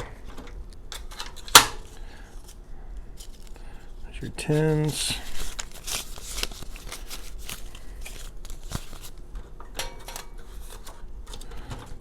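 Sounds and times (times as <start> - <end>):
banknotes rustling: 1.9 - 9.3.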